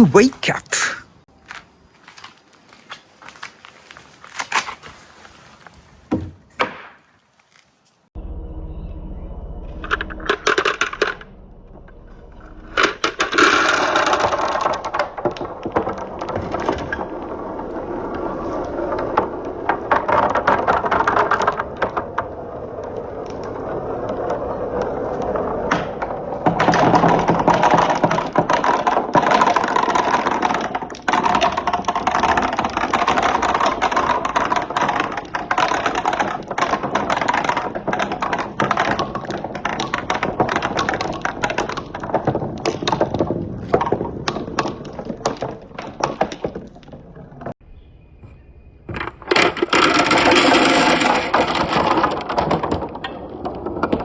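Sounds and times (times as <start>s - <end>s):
marbles rolling and clattering: 12.6s - 47.5s, 48.9s - 54.0s.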